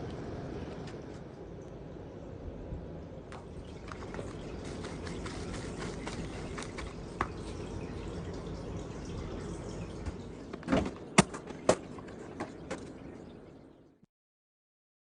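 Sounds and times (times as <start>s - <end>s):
running water: 3.0s - 14.0s.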